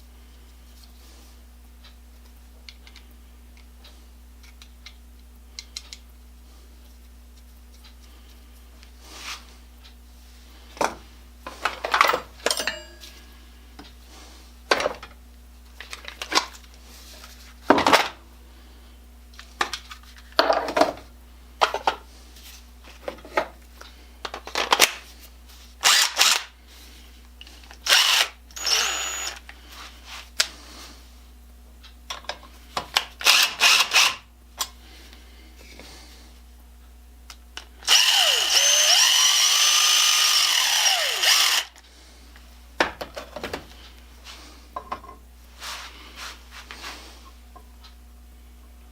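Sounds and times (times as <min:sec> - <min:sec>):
metal tools clanking: 0:12.0 - 0:13.1
electric drill running: 0:25.8 - 0:26.5, 0:27.8 - 0:29.4, 0:33.2 - 0:34.2, 0:37.8 - 0:41.8.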